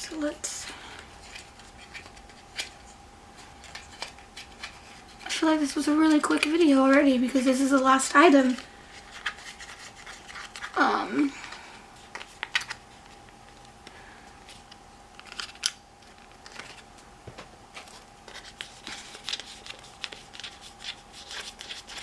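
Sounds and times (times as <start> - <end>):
packaging clicking and rustling: 14.6 - 16.8.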